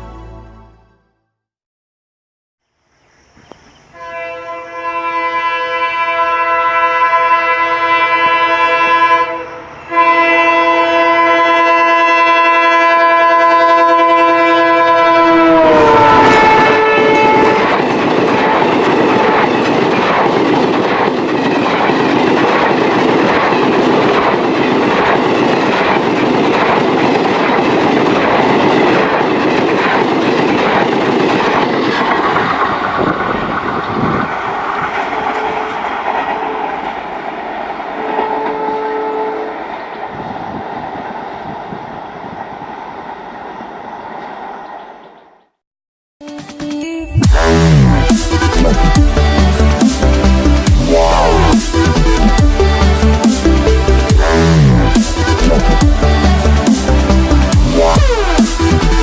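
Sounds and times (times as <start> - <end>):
train horn chord: 3.9 - 19.4, 38.0 - 39.7
train wheels clattering on rails: 16.5 - 38.6.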